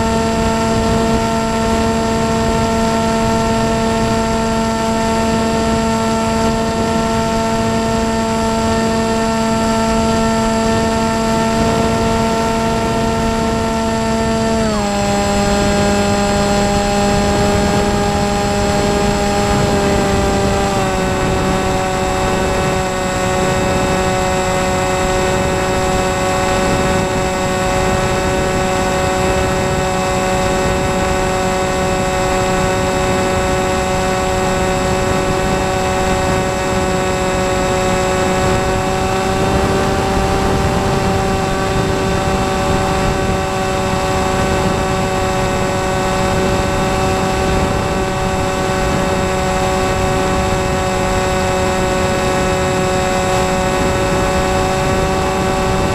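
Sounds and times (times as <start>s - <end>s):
electric motor whine: 0.0s - 55.9s.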